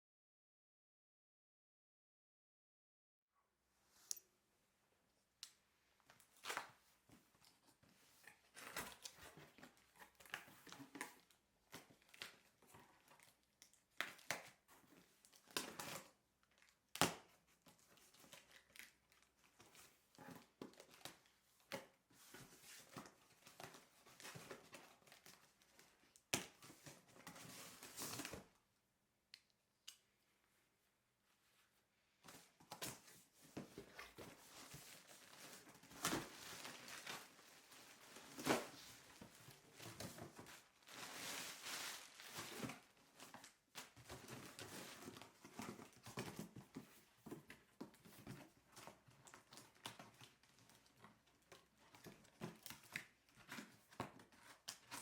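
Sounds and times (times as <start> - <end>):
packaging crinkling and tearing: 34.1 - 46.1.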